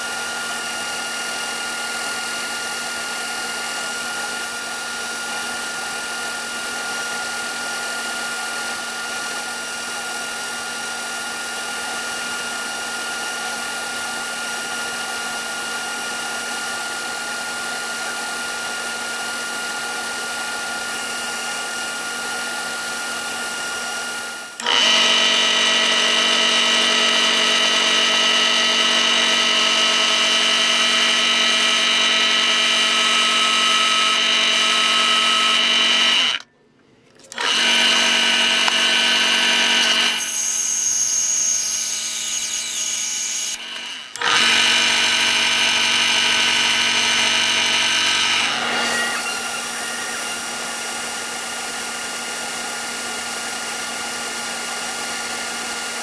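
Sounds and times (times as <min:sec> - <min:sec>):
electric power tool motor: 0:00.0 - 0:36.5, 0:37.2 - 0:56.0.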